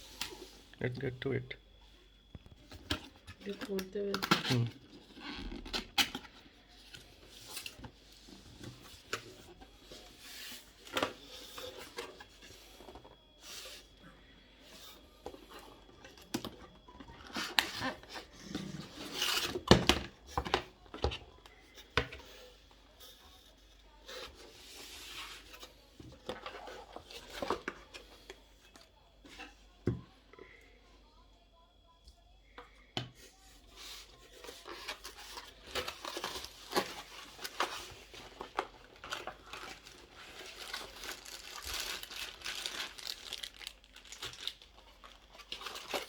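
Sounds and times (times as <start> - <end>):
box packaging being handled: 2.2 - 14.0, 33.7 - 46.0.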